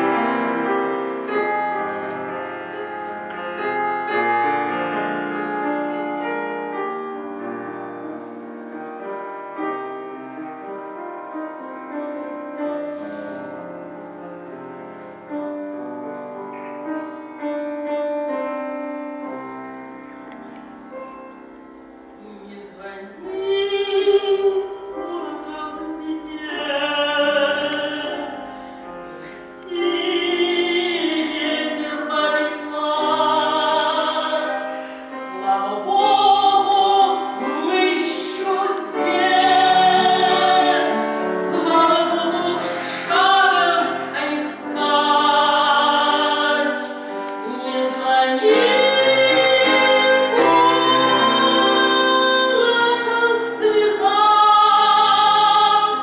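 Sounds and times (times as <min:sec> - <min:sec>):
instrumental accompaniment: 0:00.0 - 0:56.0
woman singing folk song: 0:22.2 - 0:28.4, 0:29.2 - 0:56.0.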